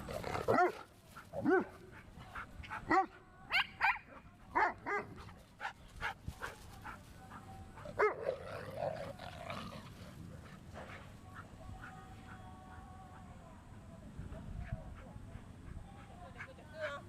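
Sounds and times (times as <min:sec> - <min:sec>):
dog barking: 0:00.5 - 0:00.8, 0:01.4 - 0:01.8, 0:02.9 - 0:04.0, 0:04.6 - 0:05.2, 0:08.0 - 0:08.3.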